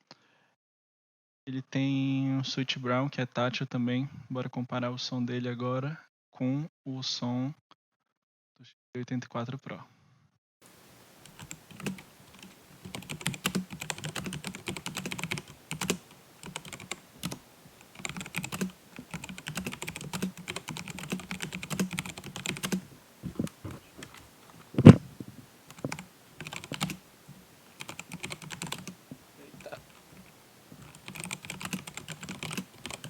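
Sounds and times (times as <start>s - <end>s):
mechanical keyboard typing: 10.9s - 27.0s, 27.7s - 33.0s.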